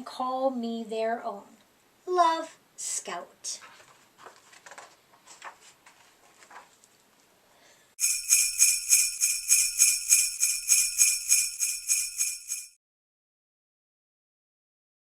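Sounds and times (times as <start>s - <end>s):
jingle bells shaken: 8.0s - 12.8s.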